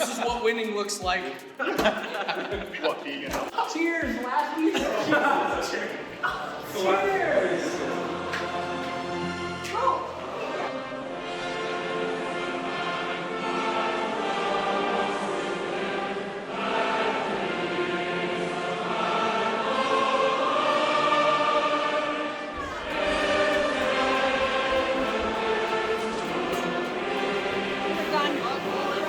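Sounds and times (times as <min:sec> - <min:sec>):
choir singing held notes: 0:00.0 - 0:29.0
bass voices singing: 0:01.4 - 0:10.7, 0:16.4 - 0:29.0.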